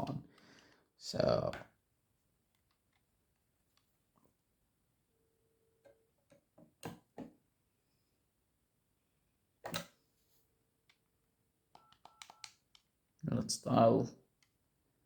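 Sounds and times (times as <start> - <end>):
faint dial tone: 11.8 - 12.6.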